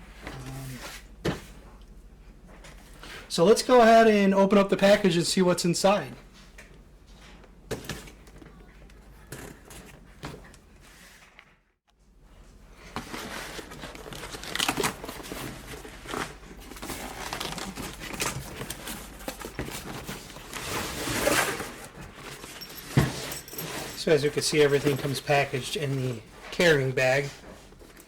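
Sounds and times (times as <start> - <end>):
packaging rustling and crinkling: 12.8 - 25.3.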